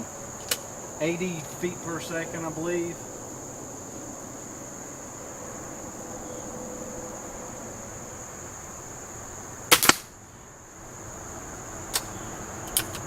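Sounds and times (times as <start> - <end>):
crickets chirring: 0.0 - 13.0
air pistol firing: 9.7 - 10.1.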